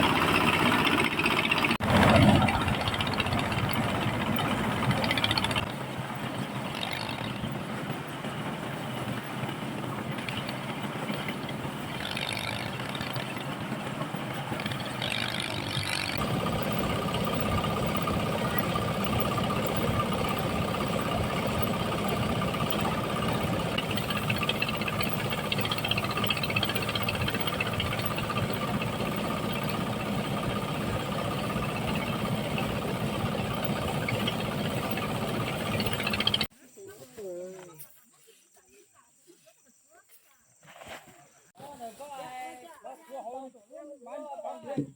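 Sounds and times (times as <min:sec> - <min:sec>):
engine running: 0:00.0 - 0:36.5
steady whine: 0:14.4 - 0:36.5.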